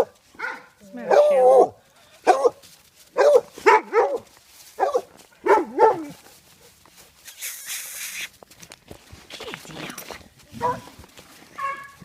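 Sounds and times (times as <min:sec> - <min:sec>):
dog barking: 0:00.0 - 0:04.2, 0:04.8 - 0:06.2, 0:10.6 - 0:10.9, 0:11.6 - 0:12.0
rustling: 0:01.8 - 0:12.0.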